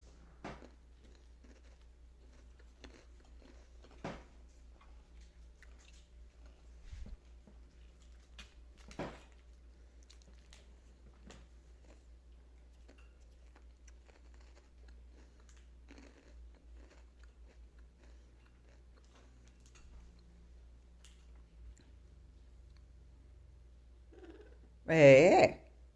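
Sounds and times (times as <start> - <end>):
parrot crunching snack: 0.4 - 20.3.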